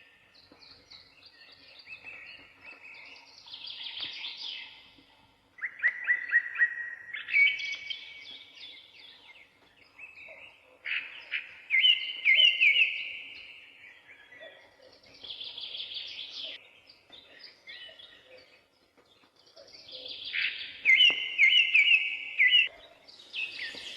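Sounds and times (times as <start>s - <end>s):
songbird chirping: 0.0s - 23.9s.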